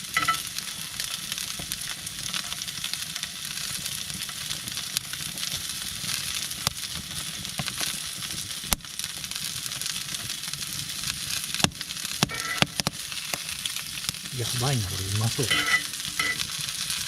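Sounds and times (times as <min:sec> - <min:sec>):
steak sizzling with pops: 0:00.0 - 0:17.0.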